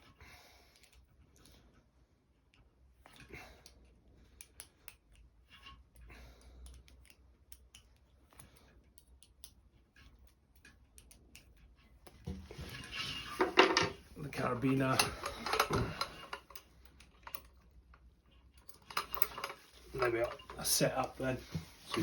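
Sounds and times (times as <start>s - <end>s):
cable and metal fittings clicking: 4.4s - 22.0s
carabiner clipping: 14.6s - 17.7s, 18.5s - 21.2s.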